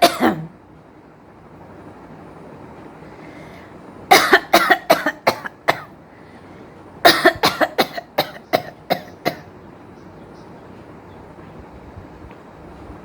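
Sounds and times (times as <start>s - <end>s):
woman coughing: 0.0s - 0.5s, 4.1s - 5.9s, 7.0s - 9.5s.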